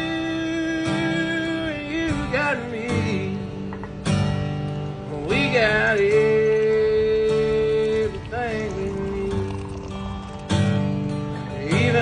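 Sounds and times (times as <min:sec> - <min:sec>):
acoustic guitar strumming: 0:00.0 - 0:12.0
person singing: 0:05.1 - 0:10.0.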